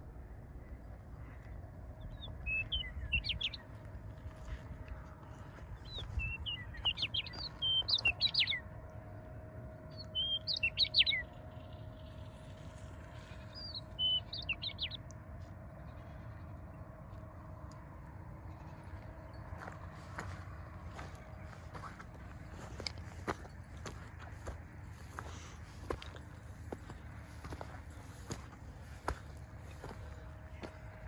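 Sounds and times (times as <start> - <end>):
songbird singing: 0.6 - 16.9, 17.6 - 31.0.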